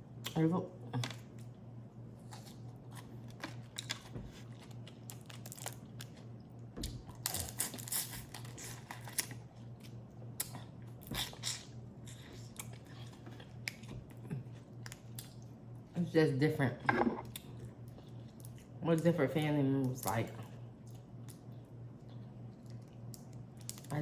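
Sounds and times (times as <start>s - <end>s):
faint low hum: 0.0s - 24.0s
shells crackling and tearing: 4.6s - 6.1s, 23.2s - 24.0s.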